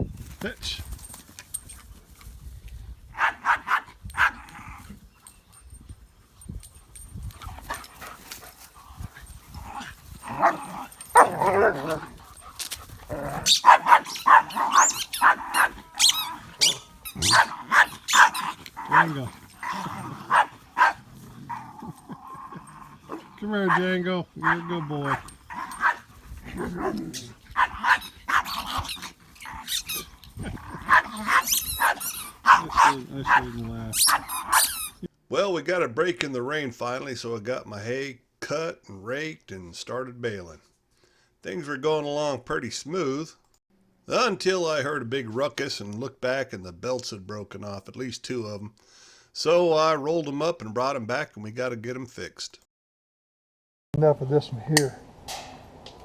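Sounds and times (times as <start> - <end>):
dog yipping: 3.2 - 4.4, 13.4 - 21.0, 24.4 - 26.0, 26.6 - 30.1, 30.8 - 35.0.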